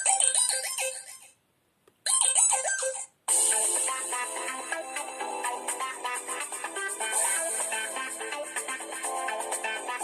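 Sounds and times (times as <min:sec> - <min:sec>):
ringtone melody: 0:02.1 - 0:10.0.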